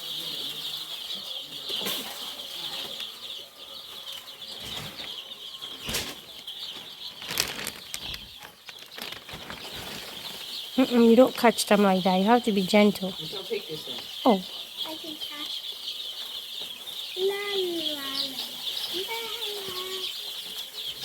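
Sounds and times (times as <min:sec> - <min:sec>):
chicks cheeping: 0:00.0 - 0:21.0
wing flapping and scuffling: 0:04.5 - 0:11.1.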